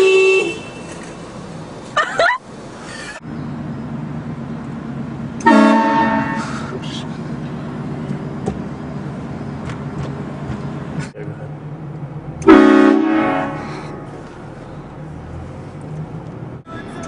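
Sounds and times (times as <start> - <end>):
train horn blast: 5.4 - 6.7, 12.4 - 14.1.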